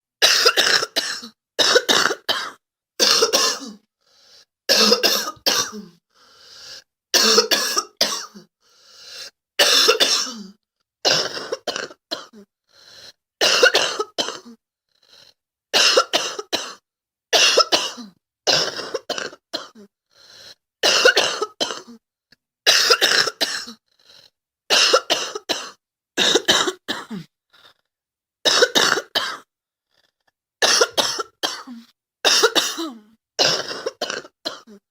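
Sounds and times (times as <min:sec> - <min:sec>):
girl coughing: 0:00.2 - 0:03.8, 0:04.7 - 0:05.9, 0:07.2 - 0:08.4, 0:09.6 - 0:12.4, 0:13.4 - 0:14.6, 0:15.8 - 0:16.8, 0:17.4 - 0:19.9, 0:20.8 - 0:22.0, 0:22.7 - 0:23.8, 0:24.7 - 0:27.3, 0:28.5 - 0:29.5, 0:30.6 - 0:34.8.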